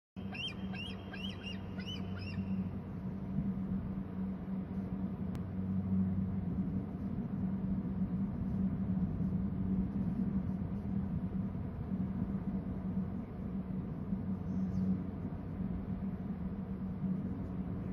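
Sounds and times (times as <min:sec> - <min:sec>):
eaglet chirping: 0:00.2 - 0:02.6
steady low hum: 0:00.2 - 0:17.9.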